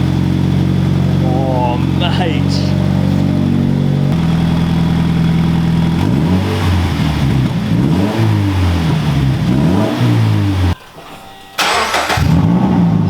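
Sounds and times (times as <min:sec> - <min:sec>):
car engine idling and revving: 0:00.0 - 0:10.8, 0:11.6 - 0:13.0.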